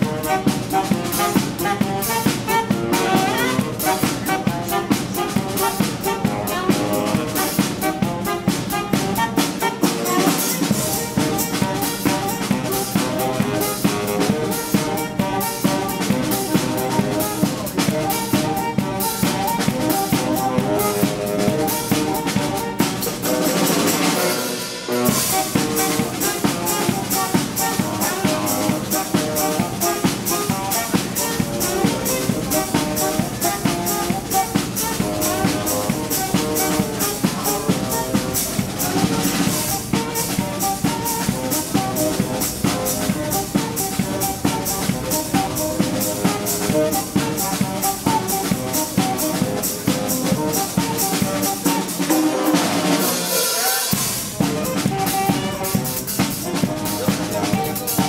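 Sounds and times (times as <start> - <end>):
drum kit beat: 0.0 - 58.0
honking saxophone riffs: 0.0 - 58.0.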